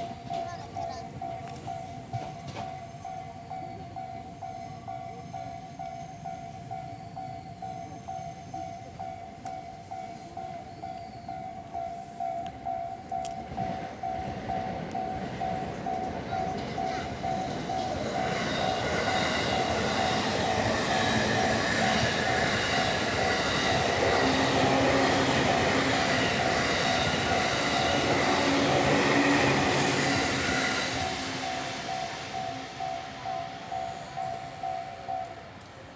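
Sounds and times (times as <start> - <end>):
electric train passing: 0.0 - 35.9
level crossing alarm ringing: 1.6 - 35.6.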